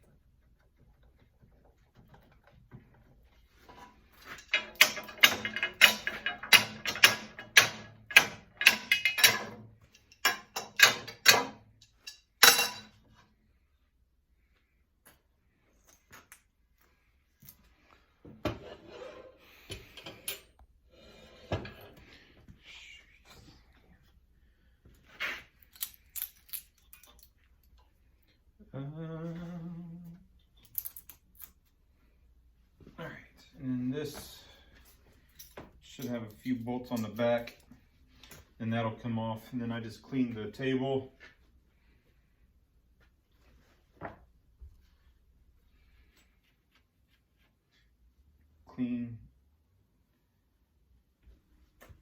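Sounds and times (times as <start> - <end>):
metal parts clicking and clinking: 3.8 - 13.0, 25.6 - 27.9, 30.6 - 31.6.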